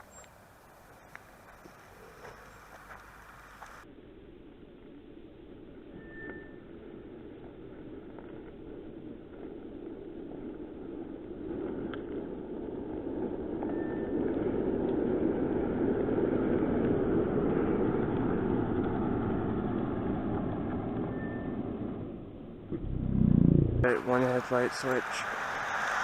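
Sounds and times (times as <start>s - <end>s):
car tyre and engine noise: 0.0s - 26.0s.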